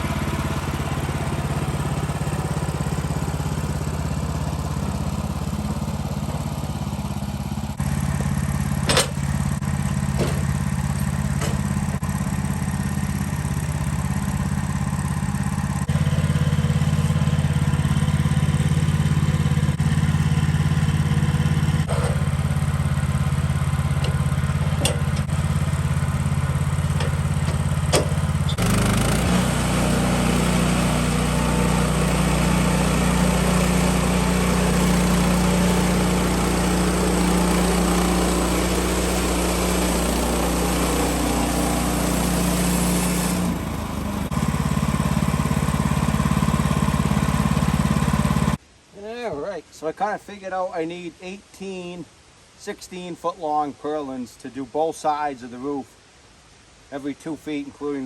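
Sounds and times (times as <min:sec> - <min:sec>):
gasoline engine running: 0:00.0 - 0:48.6
sharp clicks or knocks: 0:08.2 - 0:09.3, 0:24.8 - 0:25.3, 0:26.9 - 0:28.2.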